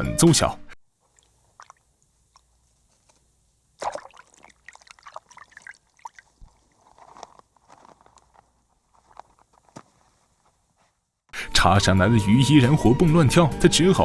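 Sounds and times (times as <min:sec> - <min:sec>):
water splashing in ice hole: 0:01.1 - 0:02.5, 0:03.8 - 0:06.8.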